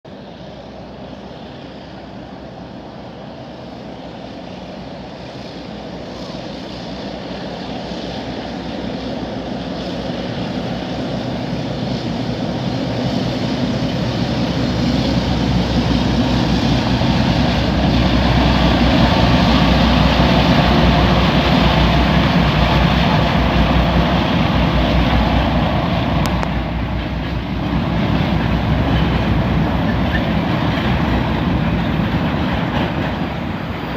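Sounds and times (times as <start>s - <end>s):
diesel locomotive passing: 0.1s - 33.9s.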